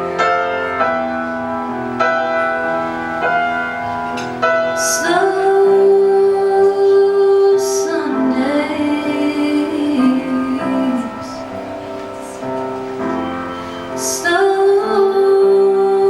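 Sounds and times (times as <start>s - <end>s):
piano chords: 0.0s - 16.0s
woman singing long note: 4.8s - 12.5s, 13.8s - 16.0s.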